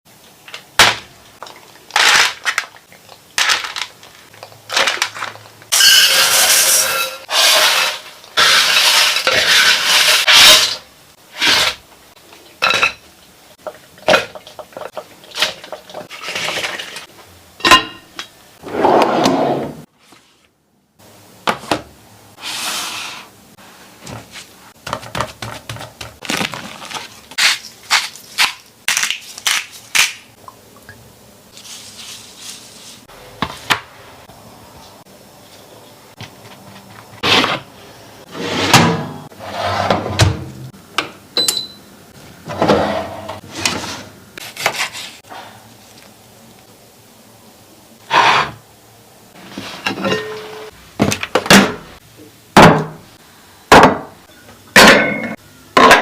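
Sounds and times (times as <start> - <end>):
dishes and utensils clinking: 12.6 - 13.0, 49.8 - 50.8
crackling or crunching: 26.2 - 30.4.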